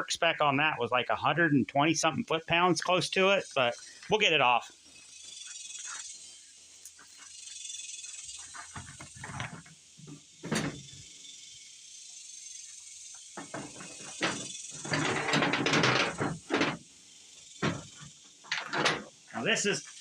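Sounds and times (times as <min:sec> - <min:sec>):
insects droning: 0:00.0 - 0:20.0
hand tools clinking: 0:17.6 - 0:19.1.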